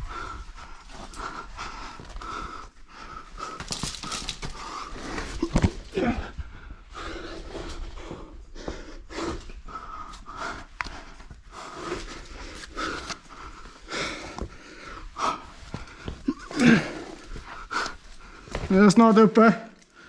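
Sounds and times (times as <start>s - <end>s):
heavy panting breaths: 0.0s - 18.9s.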